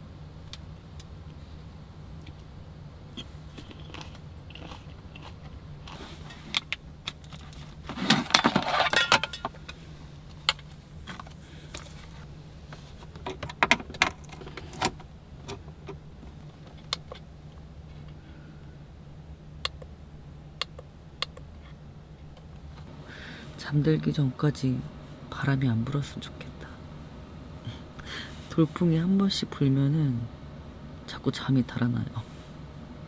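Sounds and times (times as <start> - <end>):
steady low hum: 0.0 - 33.0
rustling clatter: 6.0 - 9.7.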